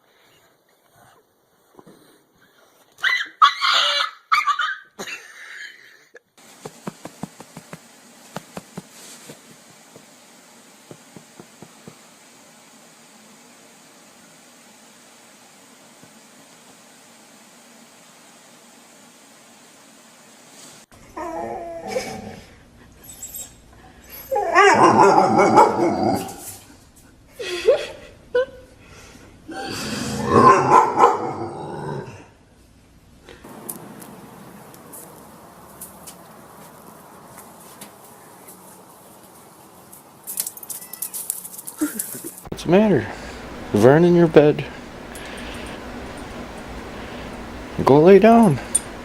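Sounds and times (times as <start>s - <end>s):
dog whining and yowling: 3.0s - 4.9s, 21.0s - 26.6s
puppy whimpering and howling: 3.0s - 4.9s, 21.0s - 22.4s, 23.0s - 26.4s
faint irregular taps: 6.6s - 10.1s, 10.8s - 12.0s.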